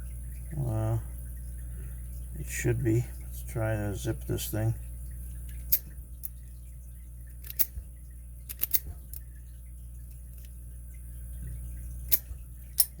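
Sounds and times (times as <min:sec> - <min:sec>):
lock pick metallic clicks: 0:07.4 - 0:07.8, 0:08.5 - 0:09.2, 0:12.1 - 0:13.0.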